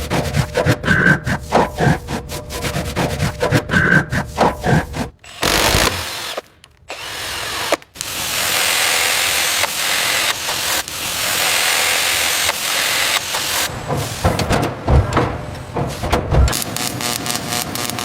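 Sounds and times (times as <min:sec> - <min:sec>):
power tool running: 0:05.2 - 0:13.7, 0:16.6 - 0:18.0.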